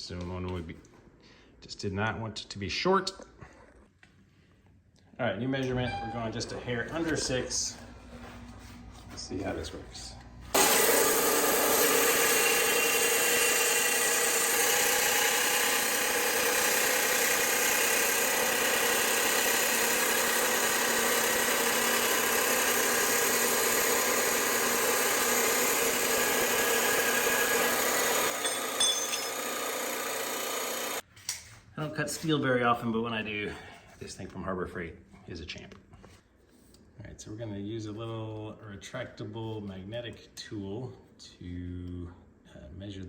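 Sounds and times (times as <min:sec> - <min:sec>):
power tool grinding steel: 0:10.5 - 0:31.0.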